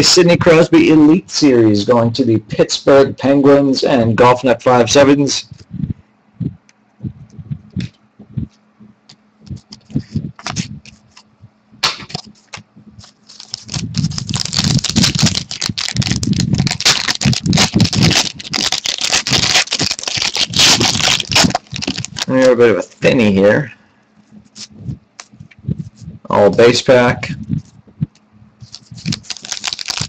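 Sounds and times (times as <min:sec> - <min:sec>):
cards clicking and rustling: 0:11.8 - 0:22.6, 0:28.6 - 0:30.0
wrapper crinkling torn open: 0:12.1 - 0:23.0, 0:28.6 - 0:30.0.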